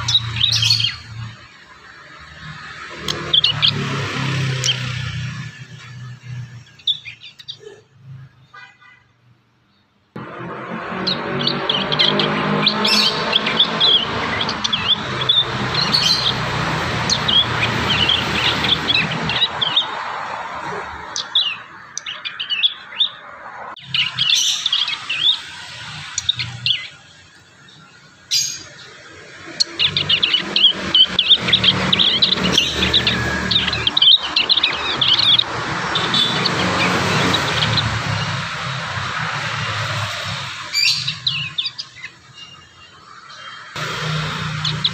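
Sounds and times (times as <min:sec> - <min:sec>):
young birds twittering high chirps: 0:00.0 - 0:08.2, 0:10.2 - 0:44.9.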